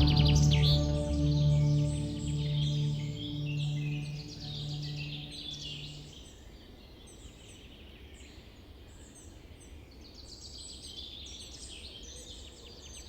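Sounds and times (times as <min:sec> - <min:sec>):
low background rumble: 0:00.0 - 0:06.1
low music drone note: 0:00.0 - 0:06.1
birds chirping and twittering: 0:00.0 - 0:06.3.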